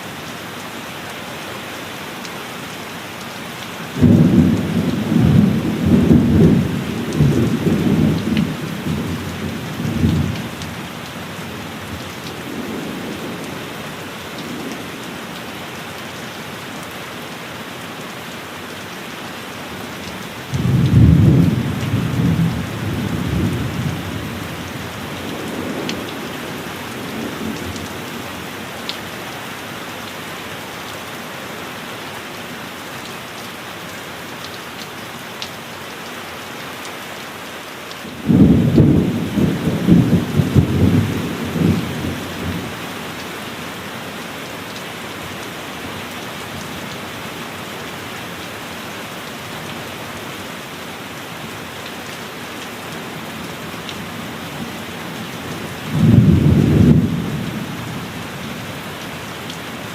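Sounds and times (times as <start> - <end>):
heavy rain: 0.0 - 59.9
thunder rumbling: 4.0 - 10.8, 20.6 - 28.2, 38.2 - 42.7, 55.8 - 58.0.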